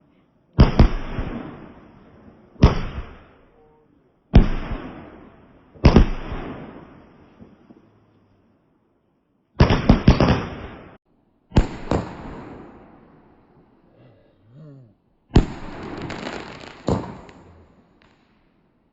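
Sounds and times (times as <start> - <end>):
fireworks crackle and rumble: 0.6 - 8.8, 9.4 - 13.9, 15.3 - 18.9
fireworks banging: 4.4 - 7.9, 9.6 - 13.9, 15.3 - 18.7.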